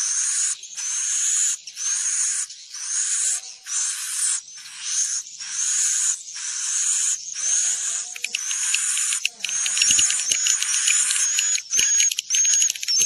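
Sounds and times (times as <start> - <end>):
swiftlets buzzy twittering: 5.5 - 13.0
rapid clicking: 8.1 - 13.0.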